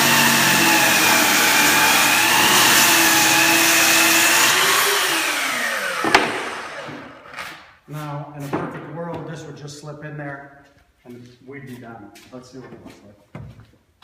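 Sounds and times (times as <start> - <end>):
miter saw cutting wood: 0.0 - 7.3.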